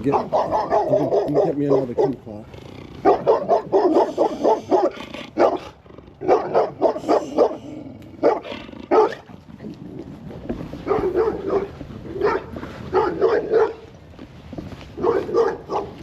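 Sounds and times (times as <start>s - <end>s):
dog barking: 0.0s - 2.3s, 3.0s - 9.3s, 10.8s - 13.8s, 15.0s - 16.0s.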